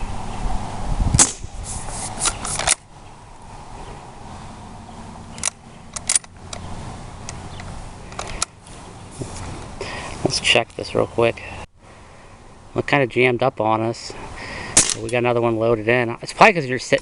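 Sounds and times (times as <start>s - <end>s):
air rifle shot pop: 1.2s - 1.5s
metallic clicks: 5.3s - 8.6s.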